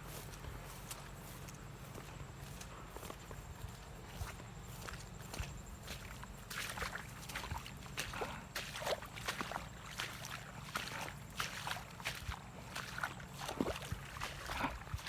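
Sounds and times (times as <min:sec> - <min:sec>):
splashing in shallow water: 0:04.2 - 0:15.0.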